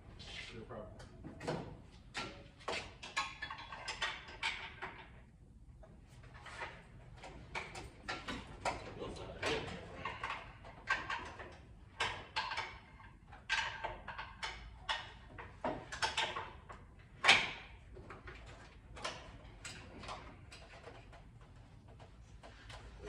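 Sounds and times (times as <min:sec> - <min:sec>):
knocks and clanks on engine: 0:06.6 - 0:23.0.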